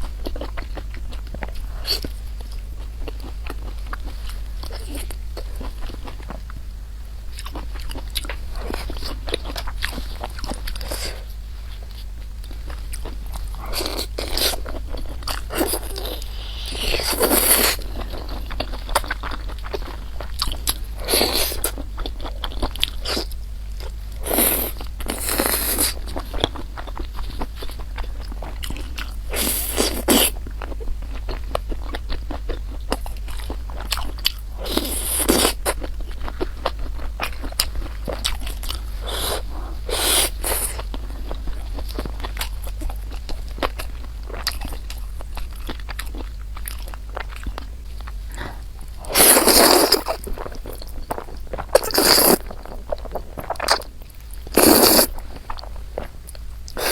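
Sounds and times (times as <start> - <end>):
wet chewing: 11.8 - 56.9
slurping: 49.1 - 50.3, 51.8 - 52.5, 54.5 - 55.2.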